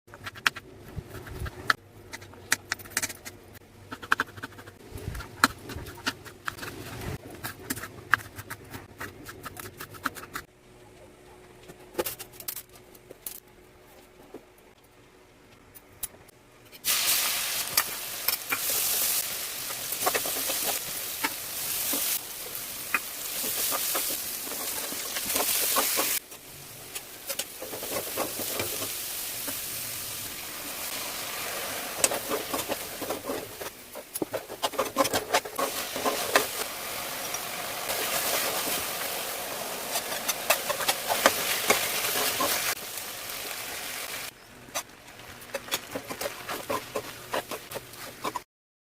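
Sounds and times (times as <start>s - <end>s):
food sizzling in hot oil: 16.8s - 26.2s, 27.2s - 33.7s, 35.6s - 44.3s
spatula clicking and scraping pan: 17.7s - 22.2s, 22.8s - 26.2s, 26.9s - 29.6s, 31.9s - 36.6s, 39.9s - 42.8s, 45.5s - 48.5s.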